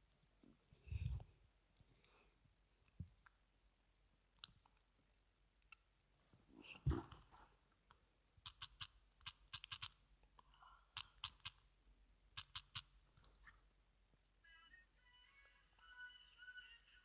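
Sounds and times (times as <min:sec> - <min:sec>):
keyboard typing: 0:08.4 - 0:10.0, 0:11.0 - 0:11.6, 0:12.4 - 0:12.9.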